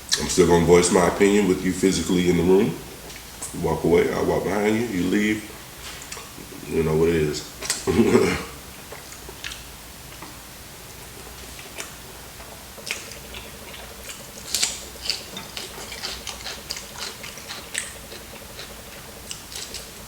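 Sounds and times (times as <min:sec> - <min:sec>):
chewing and biting: 0:11.0 - 0:20.0.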